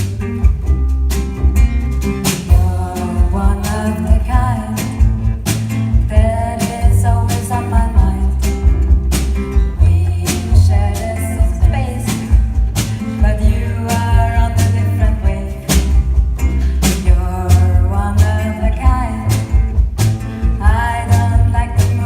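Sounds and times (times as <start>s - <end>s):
bass line: 0.0s - 22.0s
drumbeat: 0.0s - 22.0s
guitar: 0.0s - 22.0s
person singing: 2.5s - 5.0s.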